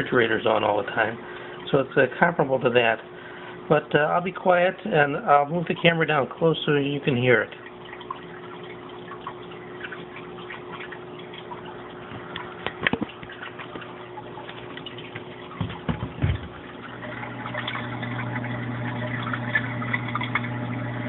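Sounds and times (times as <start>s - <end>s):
pump buzzing hum: 0.0s - 21.0s
water trickling through filter: 0.0s - 21.0s
knocks: 15.6s - 16.6s.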